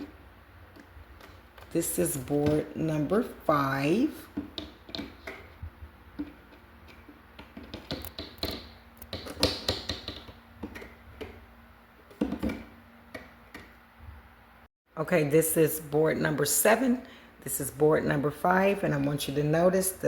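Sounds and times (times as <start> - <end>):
clicks and taps of cabinet parts: 6.2 - 11.4.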